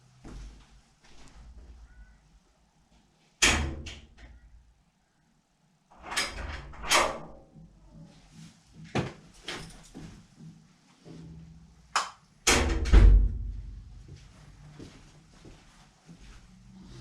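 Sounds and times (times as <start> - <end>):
low rumble: 13.2 - 14.8.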